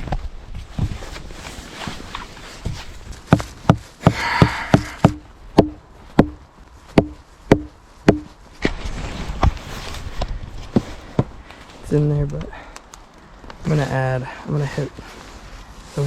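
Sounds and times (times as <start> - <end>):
wedge knocking into wood: 3.3 - 6.4, 7.0 - 8.3.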